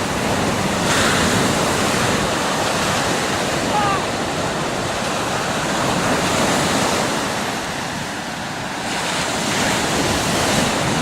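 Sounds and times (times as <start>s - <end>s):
waves breaking on beach: 0.0s - 11.0s
wind buffeting microphone: 0.0s - 11.0s.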